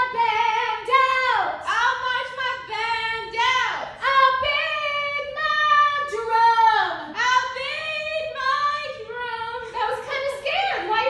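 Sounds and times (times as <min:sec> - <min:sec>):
woman singing: 0:00.0 - 0:11.0.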